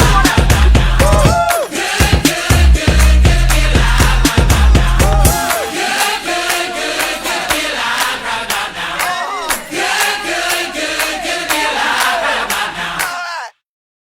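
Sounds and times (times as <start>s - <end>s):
group chanting in unison: 0.0s - 13.6s
sharp claps: 5.4s - 13.2s.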